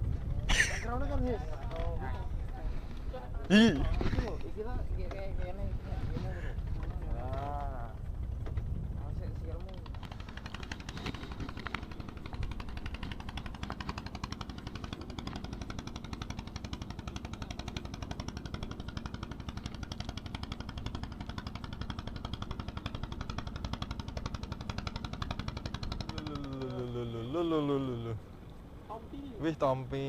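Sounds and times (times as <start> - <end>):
small engine running with knocking: 6.1 - 28.1.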